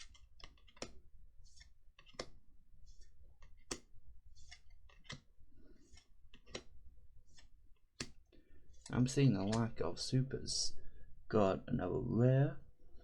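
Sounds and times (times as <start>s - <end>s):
cards rustling against cards: 0.0s - 9.8s
card snapping: 2.0s - 2.3s, 5.9s - 6.7s.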